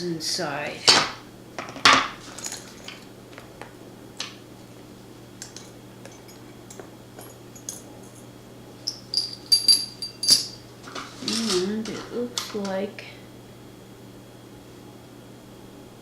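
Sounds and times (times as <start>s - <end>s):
faint steady hum: 0.0s - 16.0s
ringing metallic clinks: 8.8s - 10.6s.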